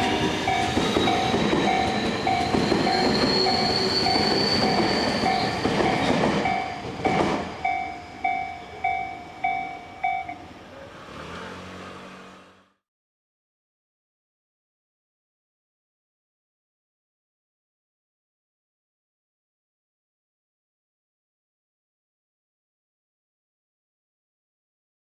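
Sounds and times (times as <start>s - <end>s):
train wheels clattering: 0.0s - 10.2s
level crossing bell ringing: 0.0s - 10.6s
train whine: 0.0s - 12.8s.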